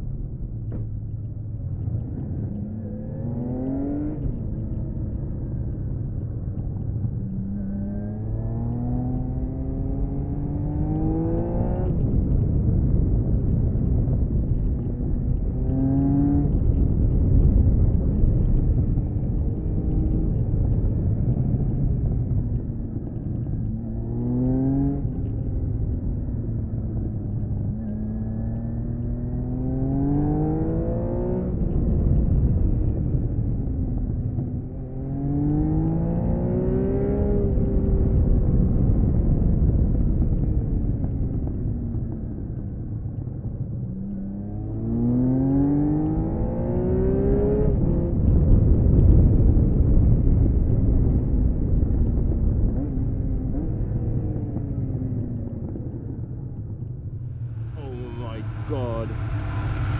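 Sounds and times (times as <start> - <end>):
motorcycle engine accelerating: 0.8 - 59.9
loud rushing noise: 57.2 - 59.9.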